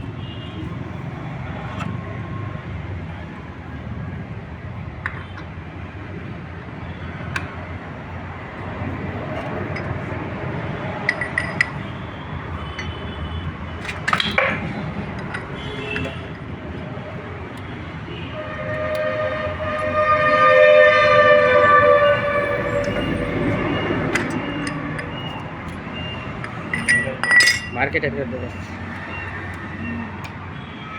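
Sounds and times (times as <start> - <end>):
steady background noise: 0.0 - 30.9
two-tone horn: 18.2 - 23.8
metallic clinks of tools: 26.4 - 27.8.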